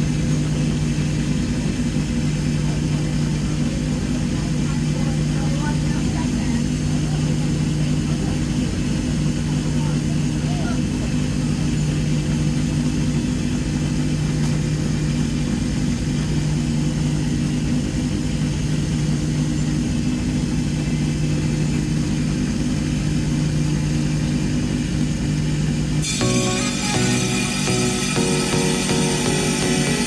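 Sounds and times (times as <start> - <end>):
trim saw cutting stone: 26.0 - 30.0.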